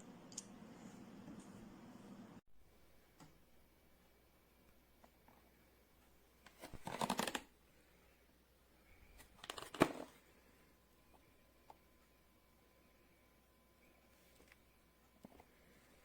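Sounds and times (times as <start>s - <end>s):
rustling handling noise: 9.0s - 10.5s.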